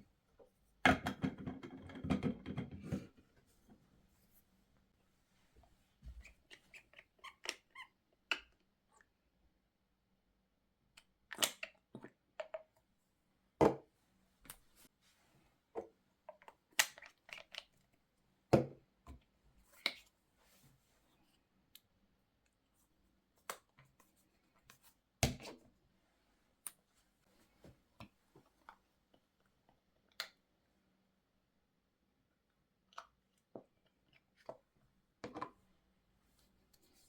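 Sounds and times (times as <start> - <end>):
objects knocking and clattering: 0.9 - 3.2.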